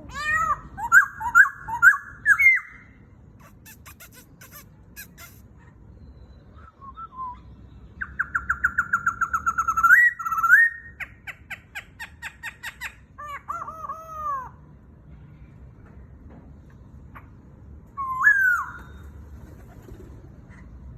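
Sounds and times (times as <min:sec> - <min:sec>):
bird singing trills and whistles: 0:00.2 - 0:03.0, 0:06.0 - 0:11.1, 0:17.9 - 0:19.2.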